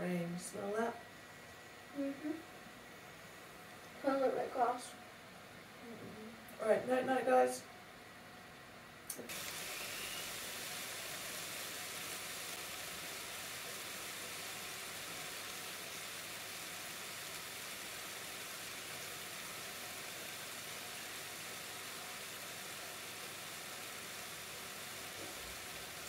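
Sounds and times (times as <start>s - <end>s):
steady rain: 9.3s - 26.0s.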